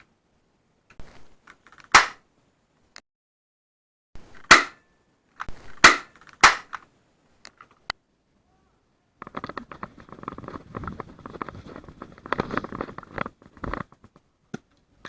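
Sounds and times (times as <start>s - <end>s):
airsoft pistol shots: 1.9s - 2.2s, 4.4s - 4.8s, 5.8s - 6.8s
dense crackling rustle: 9.2s - 14.4s.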